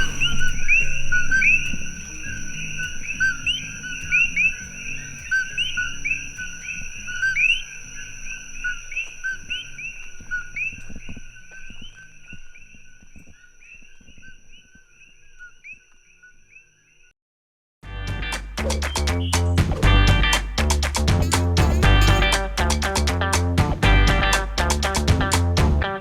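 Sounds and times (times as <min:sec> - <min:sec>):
frogs chorus calling: 0:00.0 - 0:17.1.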